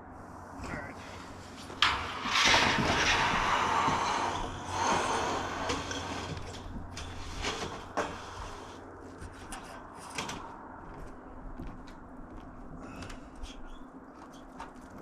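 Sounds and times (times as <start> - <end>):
metal roofing panel scraping: 0.8 - 10.6.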